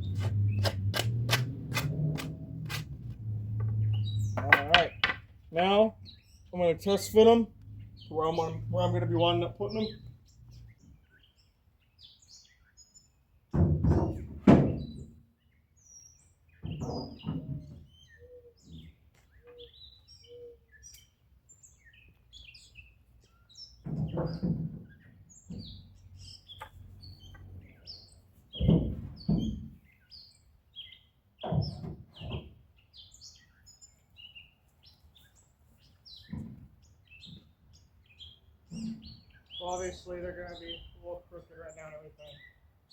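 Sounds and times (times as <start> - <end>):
small birds chirping: 0.0 - 2.0, 3.0 - 42.9
wood pieces knocking and thudding: 0.1 - 5.4.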